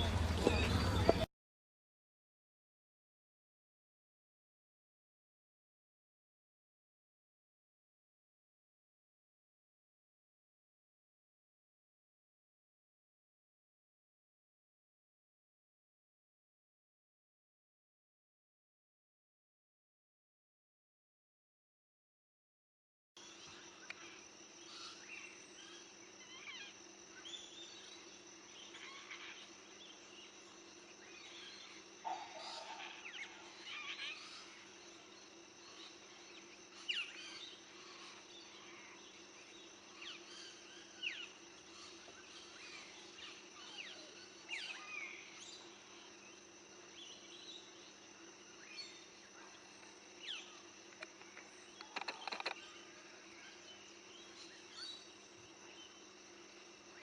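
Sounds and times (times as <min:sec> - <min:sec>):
birds chirping: 0:00.0 - 0:01.3
faint low hum: 0:00.0 - 0:01.3, 0:23.2 - 0:57.0.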